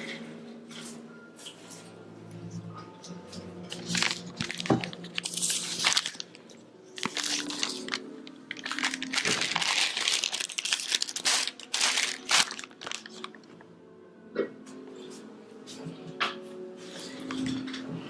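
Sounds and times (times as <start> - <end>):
wrapping crinkling: 3.6 - 13.6.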